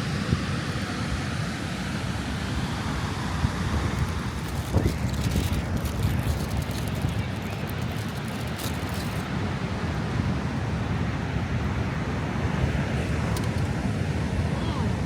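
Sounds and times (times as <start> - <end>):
wind buffeting microphone: 2.0 - 10.7.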